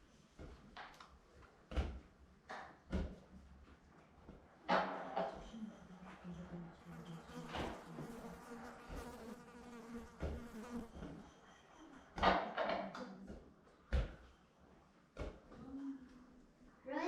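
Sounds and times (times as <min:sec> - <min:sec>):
insect buzzing: 0:06.8 - 0:11.0.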